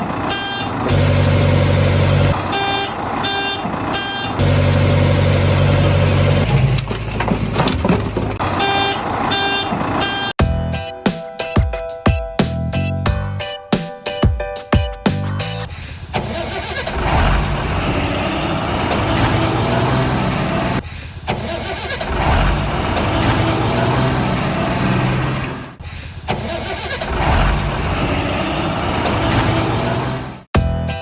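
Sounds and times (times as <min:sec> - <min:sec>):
heavy vehicle engine revving: 0:00.8 - 0:02.7, 0:04.4 - 0:09.2, 0:16.4 - 0:20.8, 0:21.5 - 0:25.8, 0:26.5 - 0:30.5.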